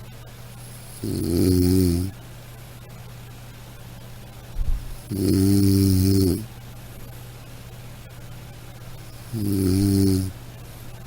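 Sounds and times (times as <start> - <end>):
low-pitched snore: 0.7 - 2.1, 5.0 - 6.5, 9.2 - 10.4.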